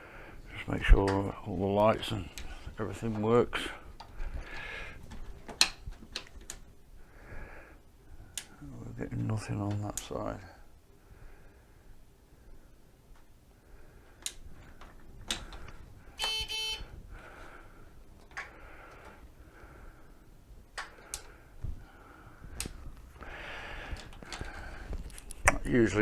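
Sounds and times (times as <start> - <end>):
switch clicks: 15.3 - 16.8
short electronic beep: 16.2 - 16.8.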